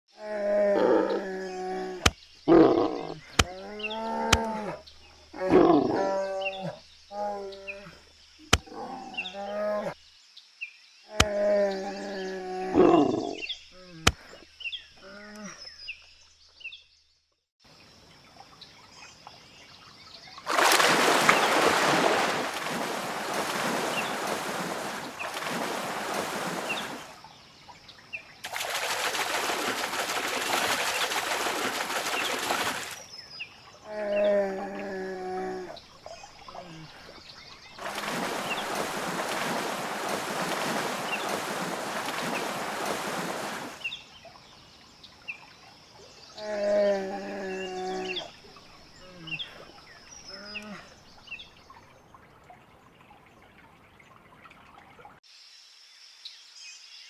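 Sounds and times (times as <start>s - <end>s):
animal calls rising and falling: 20.5s - 27.2s, 37.8s - 43.8s.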